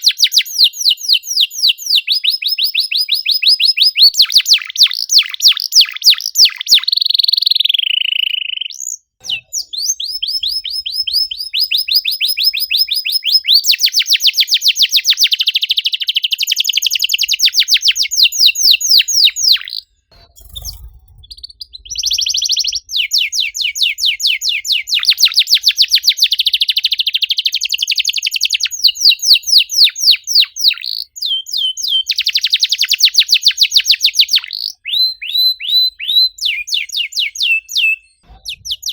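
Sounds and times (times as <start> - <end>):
canary singing rapid chirps: 0.0 - 38.9.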